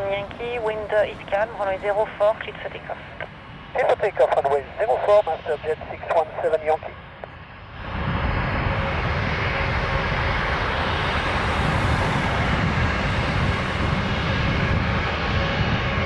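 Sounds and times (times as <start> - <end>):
jet engines at takeoff power: 0.0 - 16.0.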